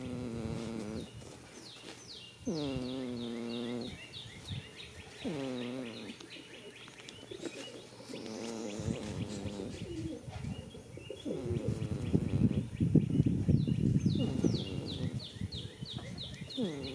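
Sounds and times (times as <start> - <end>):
goat snoring: 0.0 - 1.2, 2.4 - 4.2, 5.1 - 6.3, 8.0 - 12.6, 14.1 - 15.4, 16.5 - 16.9
small birds chirping: 0.0 - 16.9.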